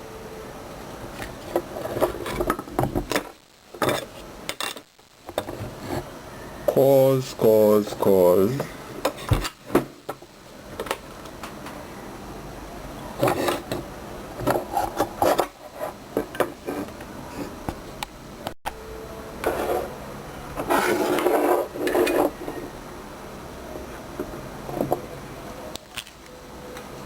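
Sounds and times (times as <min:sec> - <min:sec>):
rasping metal scrape: 0:20.6 - 0:22.4.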